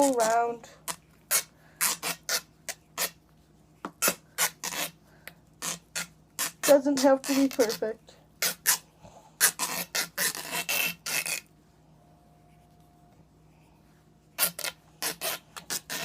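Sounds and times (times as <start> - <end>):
tape peeling off a roll: 0.0 - 3.2, 3.9 - 7.8, 9.4 - 11.5, 14.4 - 16.0.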